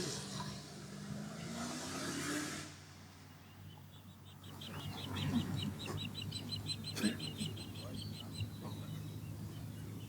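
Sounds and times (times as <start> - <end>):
osprey chirping: 3.6 - 10.0.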